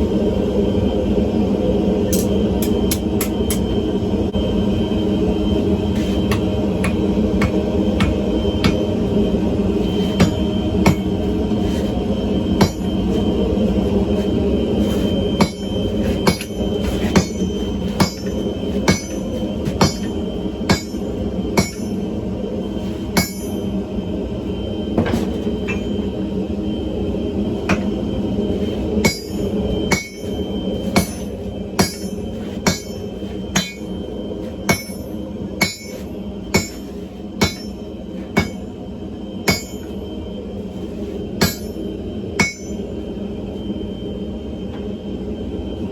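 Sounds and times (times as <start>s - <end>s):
hammer ringing on anvil: 10.2s - 11.1s, 15.4s - 22.0s, 23.2s - 23.6s, 29.0s - 30.4s, 31.0s - 34.0s, 34.7s - 36.0s, 36.6s - 37.8s, 38.4s - 38.6s, 39.5s - 39.9s, 41.4s - 41.8s, 42.4s - 42.9s.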